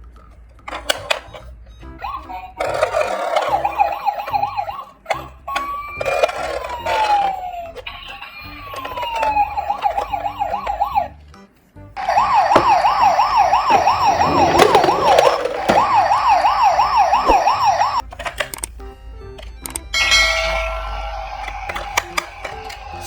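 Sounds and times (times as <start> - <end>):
toy siren wailing: 1.2 - 11.2, 12.0 - 18.0.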